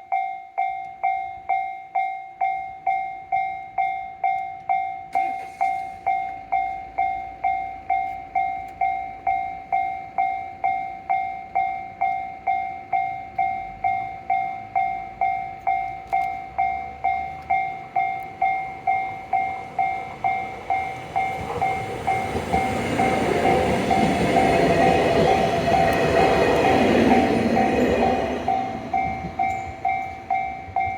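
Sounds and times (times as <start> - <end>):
level crossing warning bell ringing: 0.0 - 30.9
electric train rumbling past: 16.5 - 30.9.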